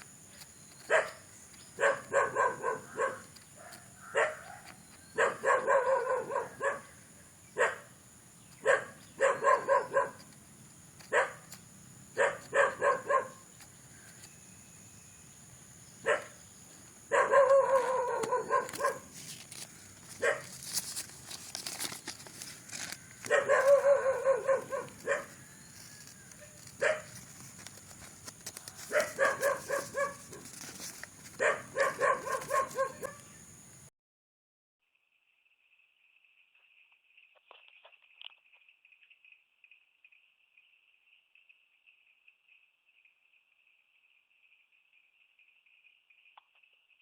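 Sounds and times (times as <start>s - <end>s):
dog barking: 0.9s - 1.2s, 1.8s - 7.0s, 7.6s - 7.9s, 8.6s - 10.3s, 11.1s - 11.5s, 12.2s - 13.4s, 16.0s - 16.4s, 17.1s - 19.1s, 20.2s - 20.6s, 23.2s - 25.5s, 26.4s - 27.2s, 28.9s - 30.6s, 31.4s - 33.3s.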